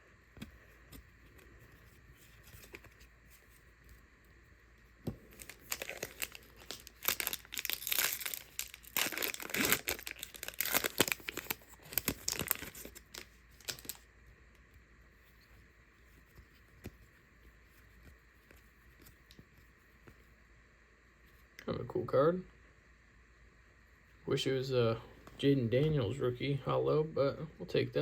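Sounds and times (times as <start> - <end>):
foil wrapper crinkling and tearing: 5.2 - 14.1.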